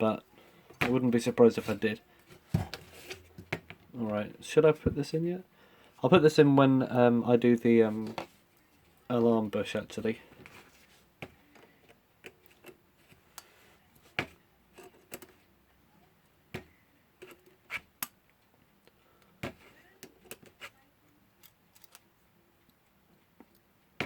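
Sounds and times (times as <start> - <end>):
small metal parts clicking: 21.4 - 22.0.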